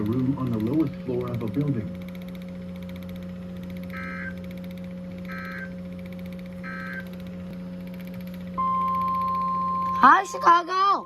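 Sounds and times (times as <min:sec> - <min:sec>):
single-pitch alert tone: 0:08.6 - 0:10.6.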